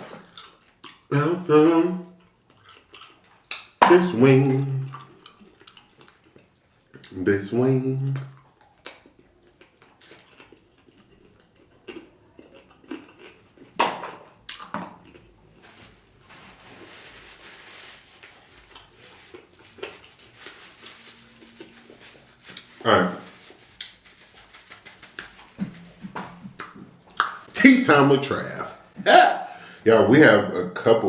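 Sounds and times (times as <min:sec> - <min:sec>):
chewing chicken wing: 0:00.3 - 0:01.1, 0:02.1 - 0:03.8, 0:04.8 - 0:07.2, 0:08.3 - 0:16.2, 0:18.2 - 0:27.6
wet mouth smacks and clicks: 0:02.5 - 0:03.8, 0:08.6 - 0:10.6, 0:26.6 - 0:27.5.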